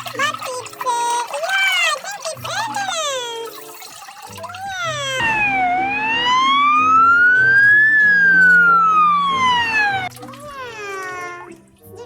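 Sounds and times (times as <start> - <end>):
siren wailing: 4.9 - 10.1.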